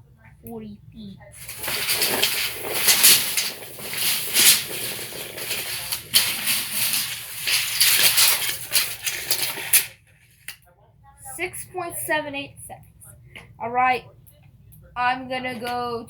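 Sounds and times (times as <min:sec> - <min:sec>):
tape measure blade retracting: 0:01.4 - 0:09.9.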